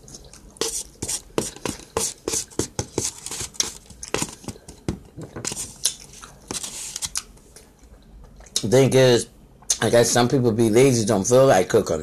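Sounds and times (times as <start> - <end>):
chewing with mouth clicks: 0.0 - 0.6, 5.8 - 6.5, 7.1 - 8.7.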